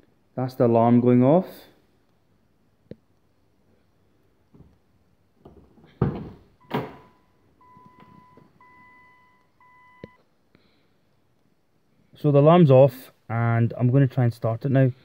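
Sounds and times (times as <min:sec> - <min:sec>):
car door thunks: 0:06.0 - 0:07.2
electronic warning beeps: 0:06.6 - 0:10.2.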